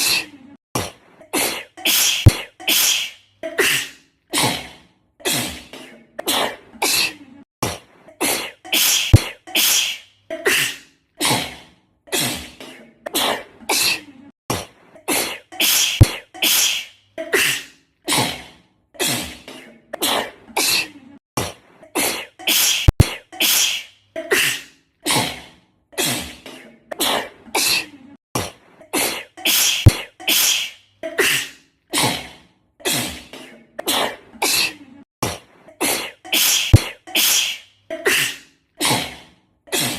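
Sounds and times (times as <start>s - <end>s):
girl sneezing: 1.3s - 4.6s, 8.2s - 11.4s, 15.1s - 18.3s, 22.0s - 25.3s, 28.9s - 32.2s, 35.8s - 39.0s.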